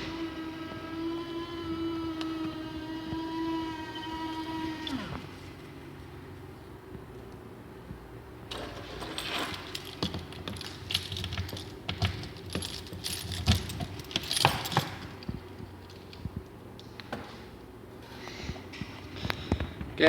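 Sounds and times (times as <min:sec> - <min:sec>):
metallic clicking and clattering: 0:08.5 - 0:17.0.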